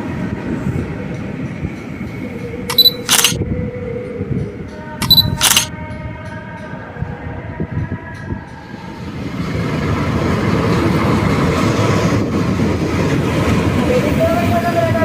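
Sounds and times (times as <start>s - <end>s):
train rumbling along tracks: 0.0s - 5.0s, 5.8s - 15.0s.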